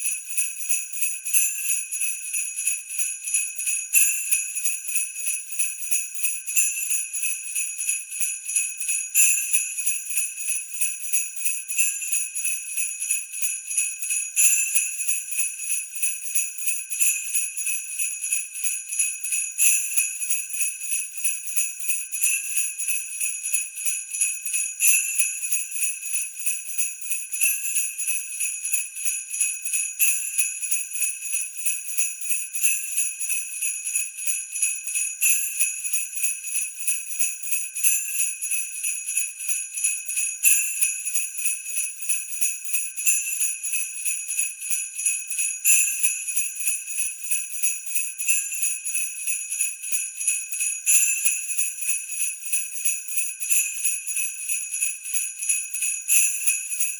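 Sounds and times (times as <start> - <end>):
sleigh bells jingling: 23.2 - 56.9.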